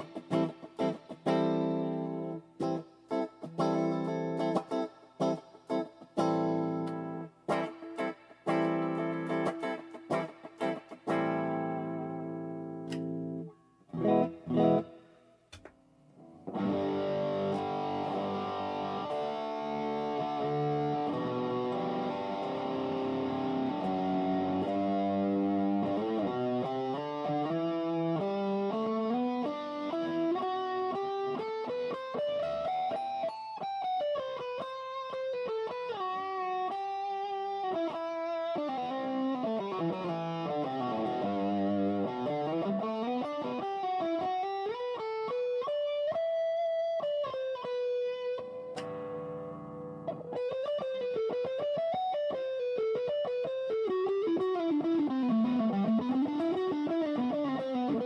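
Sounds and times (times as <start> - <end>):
electric guitar playing: 0.0 - 15.6, 16.2 - 58.0.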